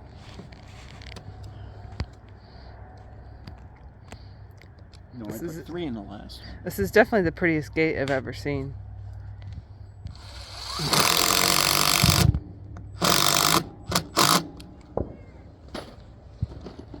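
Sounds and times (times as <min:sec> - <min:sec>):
power drill driving screws: 0:10.1 - 0:12.4, 0:13.0 - 0:14.7.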